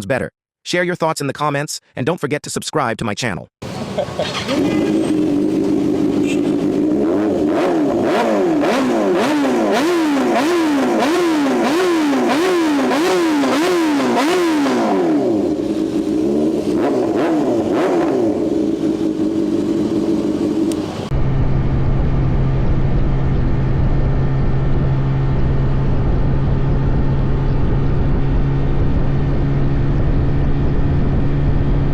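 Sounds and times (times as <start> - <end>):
motorcycle engine revving: 3.6 - 31.9
steady low drone: 17.5 - 31.9.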